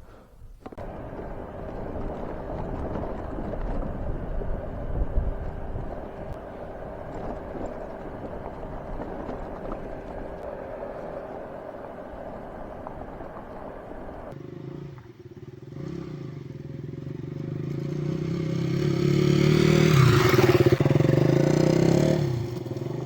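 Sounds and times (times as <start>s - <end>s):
wind rumbling on microphone: 0.4s - 14.4s
motorcycle engine running: 0.6s - 23.0s.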